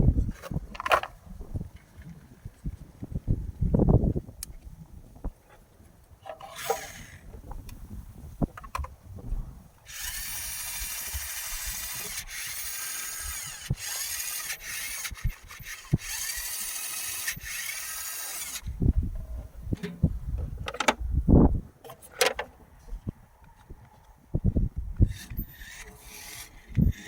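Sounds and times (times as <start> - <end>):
toy car electric motor whirring: 6.3 - 7.4, 9.9 - 18.7, 25.0 - 27.0.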